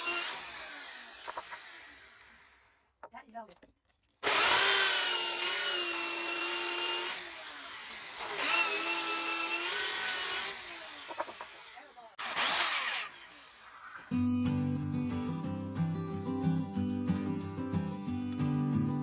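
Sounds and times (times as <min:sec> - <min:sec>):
electric drill whining: 0:00.0 - 0:02.8, 0:04.2 - 0:14.1.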